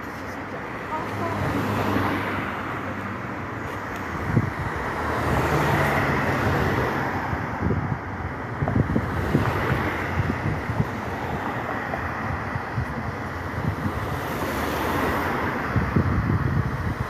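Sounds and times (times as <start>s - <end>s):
road traffic passing: 0.0s - 17.0s
wind buffeting microphone: 3.4s - 17.0s.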